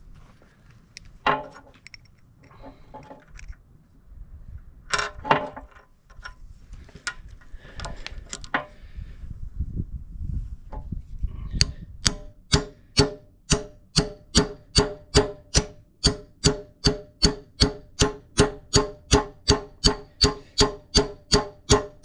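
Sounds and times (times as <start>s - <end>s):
metal tools clinking and knocking: 4.9s - 6.4s.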